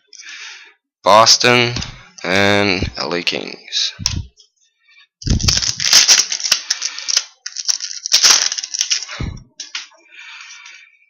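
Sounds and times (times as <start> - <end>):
foil wrapper crinkling and tearing: 5.3 - 9.9.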